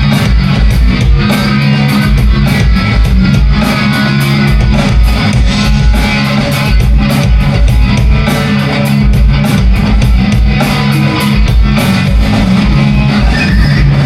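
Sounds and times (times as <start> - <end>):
distorted electric guitar riff: 0.0 - 14.0
drum kit playing: 0.0 - 14.0.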